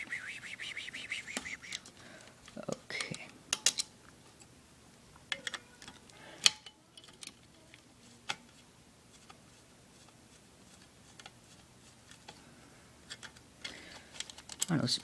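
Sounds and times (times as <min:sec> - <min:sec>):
clicks and knocks of small parts: 0:01.3 - 0:03.9, 0:05.2 - 0:08.6, 0:13.1 - 0:15.0.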